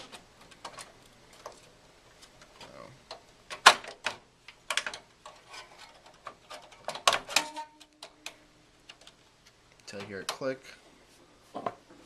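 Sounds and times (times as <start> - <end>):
plastic and metal clicks and knocks: 2.4 - 9.2.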